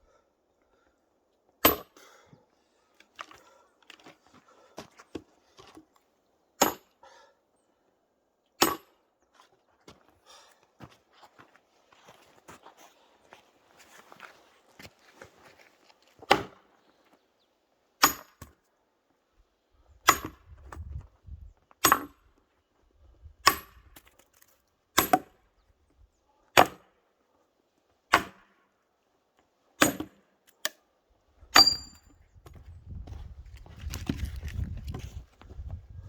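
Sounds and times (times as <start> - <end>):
axe chopping wood: 1.6 - 1.9, 6.6 - 6.9, 8.6 - 8.9, 16.3 - 16.7, 18.0 - 18.5, 20.1 - 20.4, 21.8 - 22.2, 23.4 - 23.9, 25.0 - 25.4, 26.6 - 26.9, 28.1 - 28.6, 29.8 - 30.2, 31.6 - 32.0.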